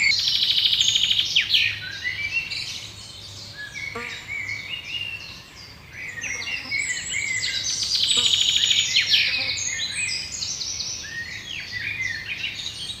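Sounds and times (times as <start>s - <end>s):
birds chirping in chorus: 0.0s - 13.0s.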